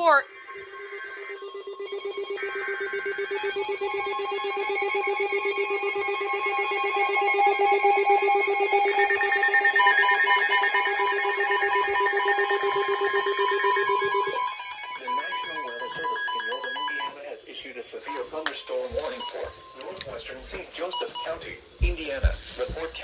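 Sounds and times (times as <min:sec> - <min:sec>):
pulsing electronic alarm tone: 0:01.3 - 0:17.1.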